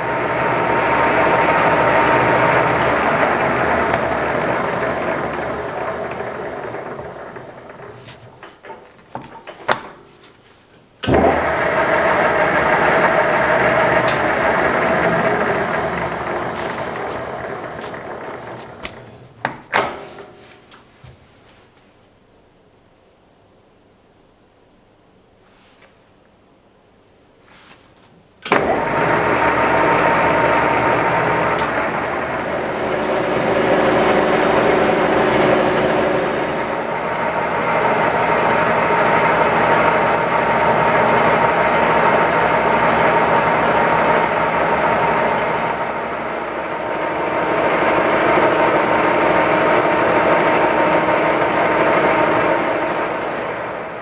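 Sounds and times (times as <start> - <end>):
grinder motor running: 0.0 - 7.5, 28.7 - 42.7.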